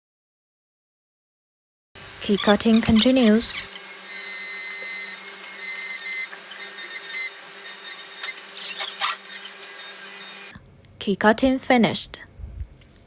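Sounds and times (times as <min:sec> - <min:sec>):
high cutter whine: 0:02.0 - 0:10.5
key cutting machine motor hum: 0:02.2 - 0:10.5.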